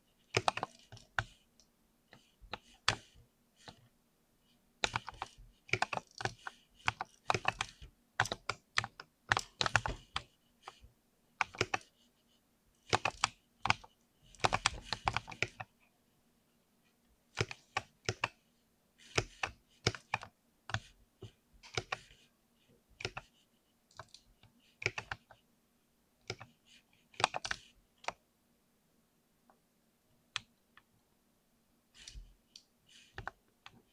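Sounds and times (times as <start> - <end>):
typing on mechanical keyboard: 0.3 - 1.3, 4.8 - 10.2, 12.9 - 15.7, 23.0 - 23.3, 24.8 - 25.3, 27.2 - 28.2.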